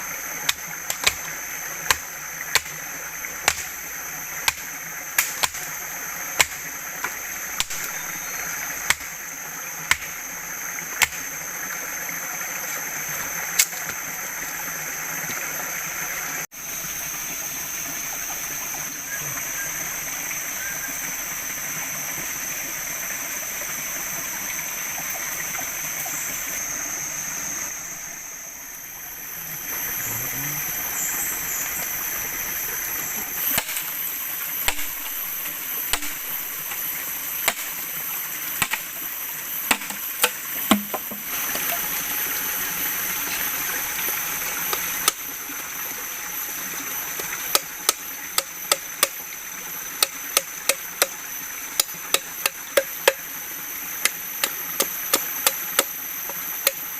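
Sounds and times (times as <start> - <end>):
chopping strikes: 0.4 - 2.8, 3.4 - 3.8, 4.4 - 5.8, 6.4 - 8.1, 8.8 - 9.2, 9.9 - 10.2, 11.0 - 11.3, 33.5 - 37.8, 38.6 - 39.0, 39.7 - 41.7, 54.0 - 55.9
rushing water: 29.1 - 56.9.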